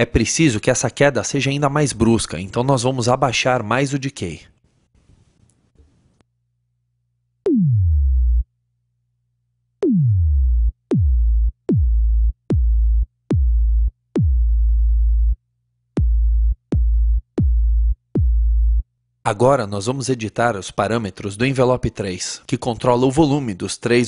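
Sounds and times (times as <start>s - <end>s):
synthesized kick drum: 7.5s - 8.5s, 9.8s - 15.4s, 16.0s - 18.9s.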